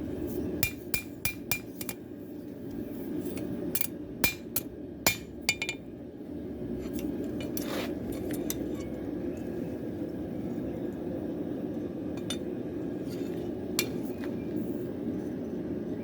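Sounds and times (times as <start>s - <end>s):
steady low hum: 0.0s - 16.0s
hammer tapping on metal: 0.6s - 2.0s.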